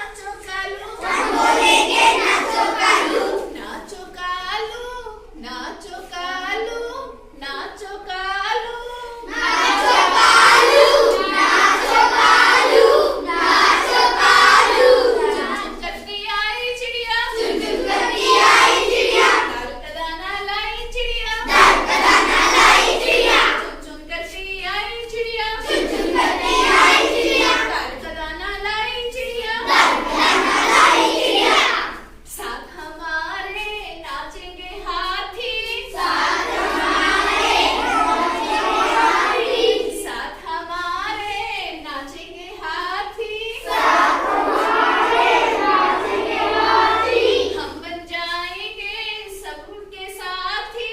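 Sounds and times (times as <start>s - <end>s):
children chanting in unison: 0.7s - 3.9s, 9.0s - 16.1s, 16.8s - 19.8s, 20.8s - 24.0s, 25.1s - 28.3s, 29.0s - 32.7s, 34.3s - 42.1s, 43.1s - 48.1s.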